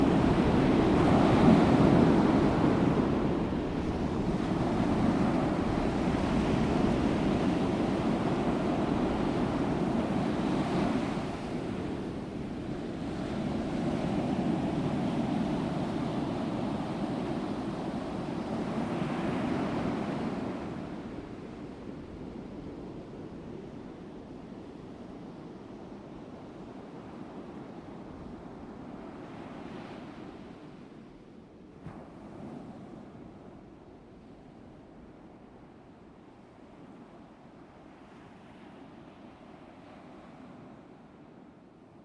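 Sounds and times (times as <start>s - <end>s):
ocean waves washing ashore: 0.0s - 42.0s.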